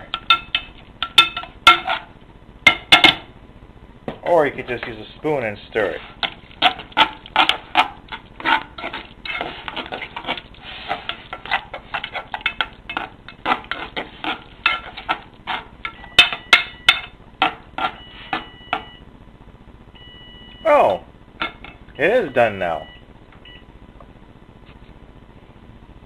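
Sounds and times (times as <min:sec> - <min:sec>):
spoon clinking against saucepan: 0:00.0 - 0:02.0, 0:15.8 - 0:17.2
short steady beeps: 0:18.0 - 0:19.0, 0:20.0 - 0:20.7.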